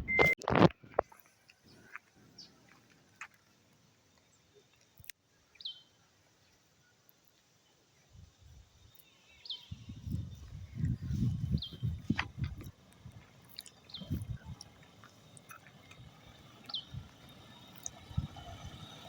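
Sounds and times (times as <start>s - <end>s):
bird chirping: 5.4s - 6.5s, 8.8s - 19.0s.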